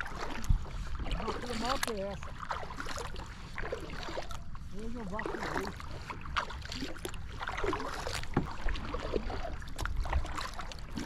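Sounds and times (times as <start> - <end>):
low wind rumble on microphone: 0.0 - 11.0
water lapping and splashing: 0.0 - 11.0
small knocks on kayak: 8.3 - 8.6.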